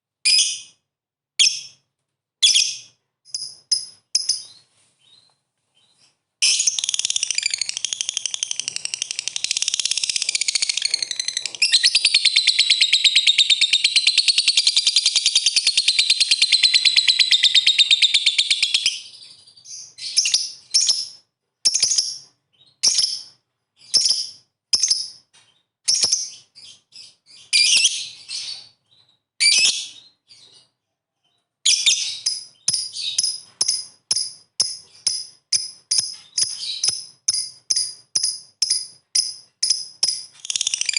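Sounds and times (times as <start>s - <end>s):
lovebird shrill chattering trill: 6.4s - 18.9s.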